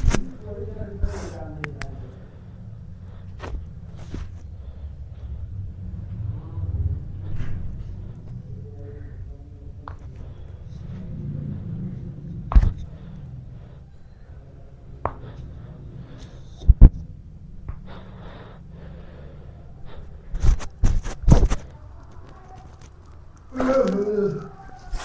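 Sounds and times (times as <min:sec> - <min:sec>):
chiropractic adjustment cracks: 0:00.0 - 0:00.5, 0:20.3 - 0:25.0
low room hum: 0:00.0 - 0:25.0.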